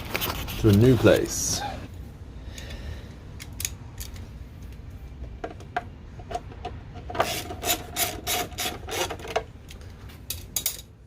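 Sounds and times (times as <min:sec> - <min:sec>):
ratchet spanner rasping: 0:07.2 - 0:09.4.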